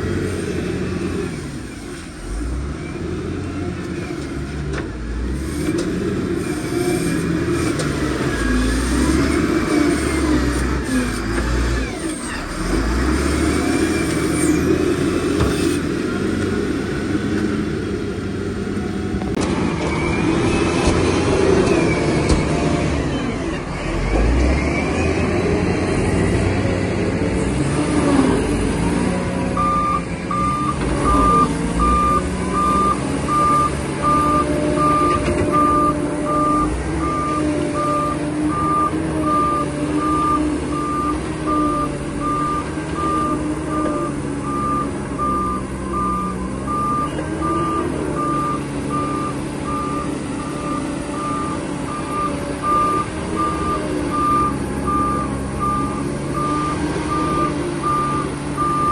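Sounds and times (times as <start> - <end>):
heavy diesel machinery engine: 0.0 - 58.9
reverse alarm beeping: 29.6 - 58.9.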